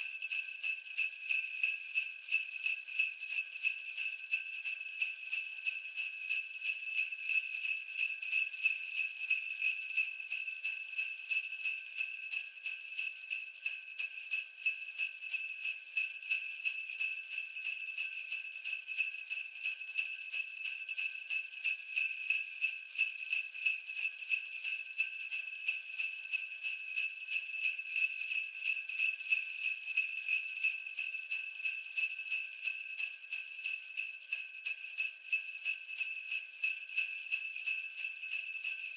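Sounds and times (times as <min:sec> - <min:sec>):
sleigh bells jingling: 0:16.2 - 0:38.9.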